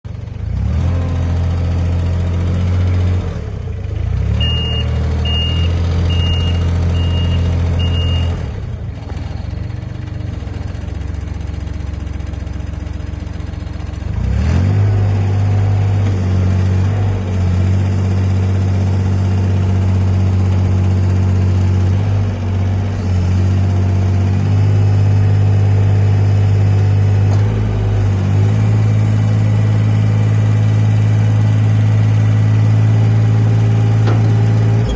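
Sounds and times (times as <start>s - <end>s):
diesel dumper engine running: 0.1s - 34.9s
reversing alarm beeping: 4.4s - 8.4s.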